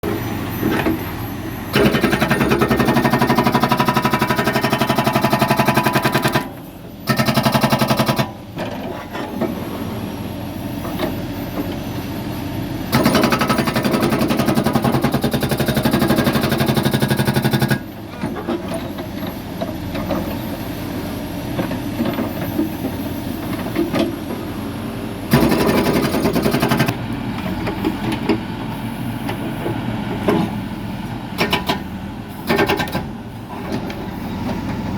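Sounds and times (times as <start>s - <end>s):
diesel engine running: 0.0s - 34.9s
hydraulic breaker hammering: 25.3s - 27.0s.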